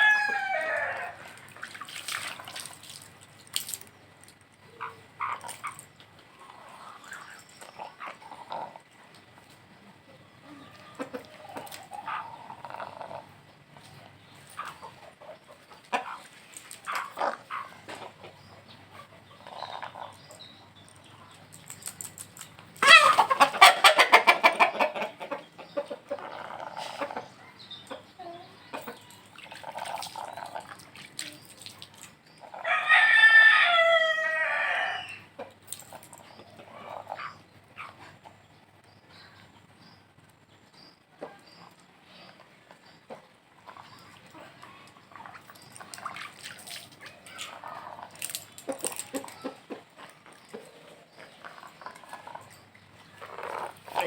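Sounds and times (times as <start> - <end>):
rooster crowing: 0.0 - 1.4, 32.6 - 35.3
chickens clucking: 4.6 - 21.5, 22.5 - 54.0
rapidly pulsing chicken call: 22.8 - 27.3.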